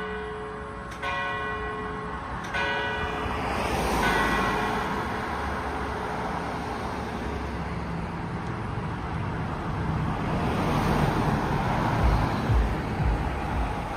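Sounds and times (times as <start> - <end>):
road traffic noise: 0.0 - 13.9
low rumbling bumps: 11.2 - 13.9.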